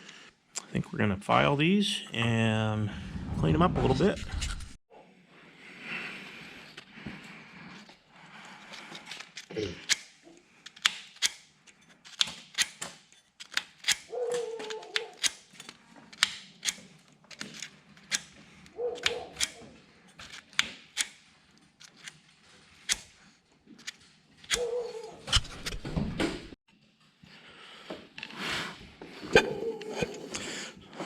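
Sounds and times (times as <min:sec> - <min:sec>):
hand tools clicking on metal: 0:08.6 - 0:22.2, 0:22.8 - 0:25.8.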